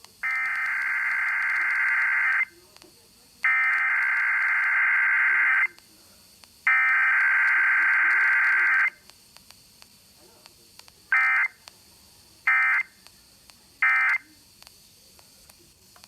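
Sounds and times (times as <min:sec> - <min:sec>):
digital data tone bursts: 0:00.2 - 0:02.5.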